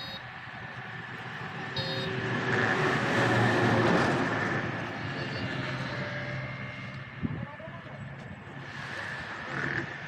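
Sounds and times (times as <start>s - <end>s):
motor vehicle passing: 0.0s - 7.2s.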